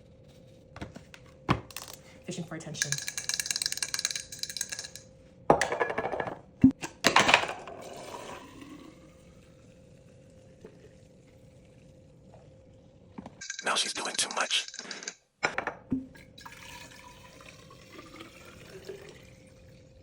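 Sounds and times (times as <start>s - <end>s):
faint steady hum: 0.0s - 20.0s
objects clattering: 0.8s - 2.2s, 2.8s - 7.8s.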